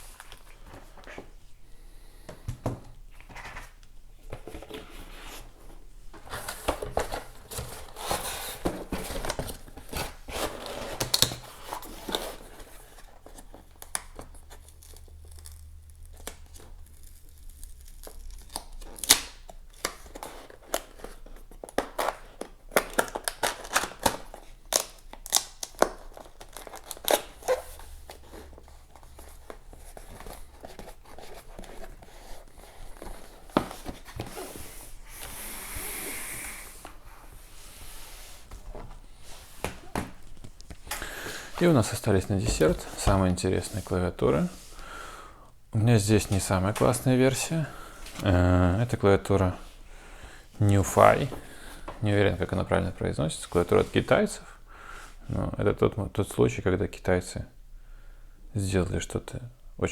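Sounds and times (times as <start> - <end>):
wrapping tearing and crinkling: 6.3 - 35.3.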